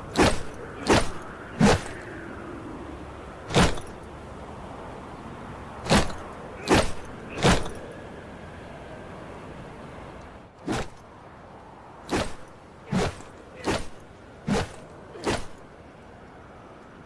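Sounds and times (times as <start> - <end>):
faint steady hiss: 0.0 - 17.0
sharp metallic knife strokes: 0.1 - 2.0, 12.1 - 15.6.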